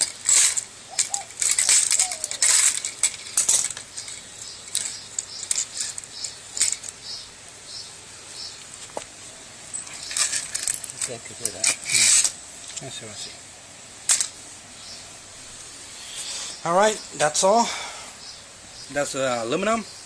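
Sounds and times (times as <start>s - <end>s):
hand tools clinking and scraping metal: 0.0s - 7.8s, 8.4s - 13.3s, 14.0s - 14.4s.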